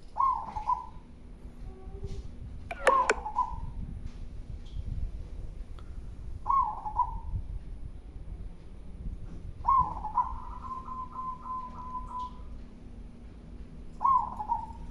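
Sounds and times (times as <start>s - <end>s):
dove cooing: 0.1s - 1.0s, 6.5s - 7.3s, 9.6s - 12.4s, 14.0s - 14.9s.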